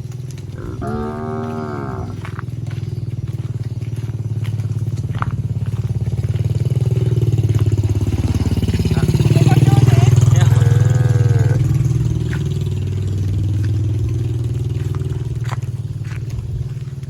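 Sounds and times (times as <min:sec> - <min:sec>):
motor engine running: 0:00.0 - 0:17.0
cow mooing: 0:00.5 - 0:02.4, 0:09.8 - 0:12.2.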